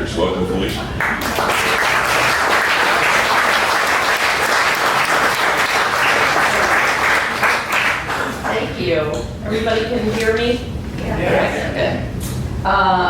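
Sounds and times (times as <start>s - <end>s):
audience applauding: 0.9s - 8.7s.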